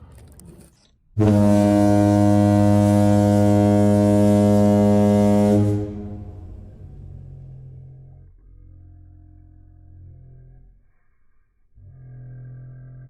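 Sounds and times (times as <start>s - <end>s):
low foghorn blast: 1.2s - 7.8s.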